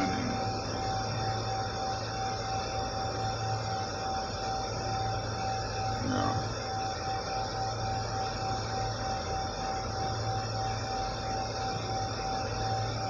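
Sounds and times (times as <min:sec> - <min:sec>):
low hum: 0:00.0 - 0:03.1
constant high whine: 0:00.0 - 0:13.0.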